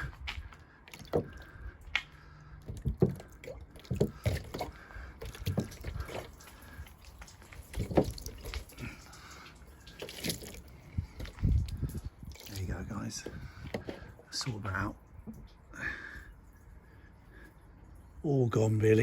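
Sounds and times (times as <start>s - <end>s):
water splashing on glass: 0.7s - 14.1s.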